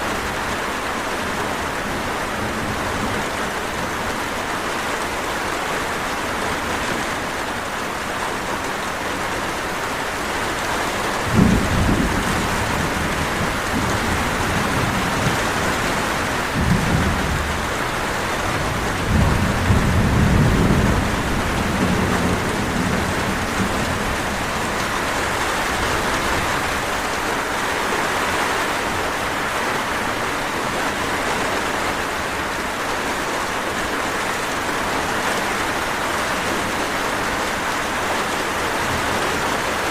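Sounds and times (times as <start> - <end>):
steady rain falling: 0.0 - 39.9
low rumbles of thunder: 11.3 - 26.9.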